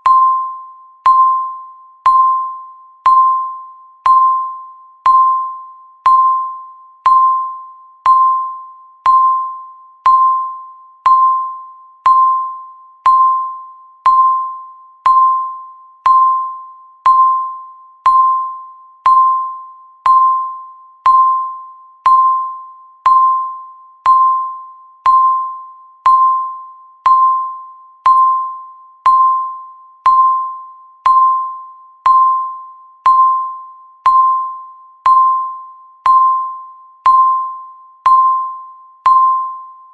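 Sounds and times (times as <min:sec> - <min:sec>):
timer beeping: 0:00.0 - 0:39.9.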